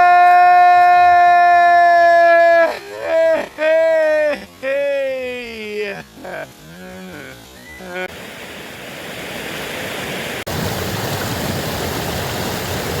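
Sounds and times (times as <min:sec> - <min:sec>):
waterfall rushing: 0:06.5 - 0:13.0.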